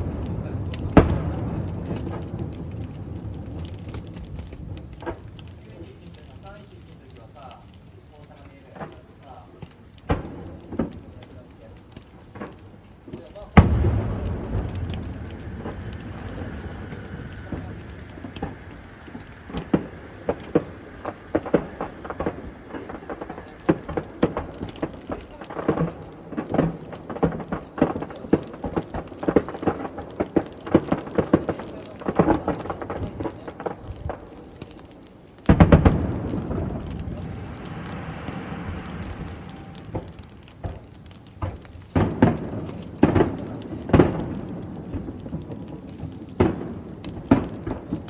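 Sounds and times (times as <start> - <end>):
firework booms: 0.0 - 48.0
firework crackles and pops: 0.0 - 48.0.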